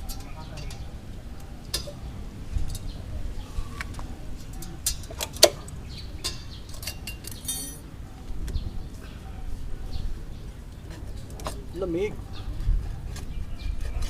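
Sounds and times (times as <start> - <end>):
metallic clinks of tools: 6.2 - 7.8
short metallic ring: 6.3 - 7.8.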